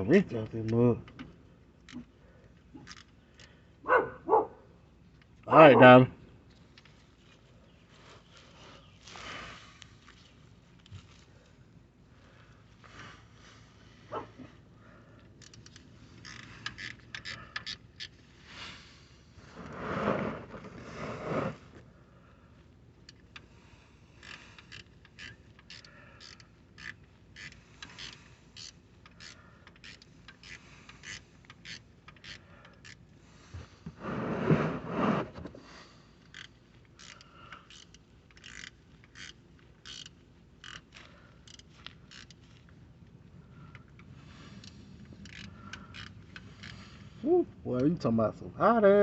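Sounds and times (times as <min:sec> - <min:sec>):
wrench clicking on metal: 0:15.4 - 0:18.2, 0:24.2 - 0:33.0, 0:36.2 - 0:42.4, 0:44.0 - 0:46.8.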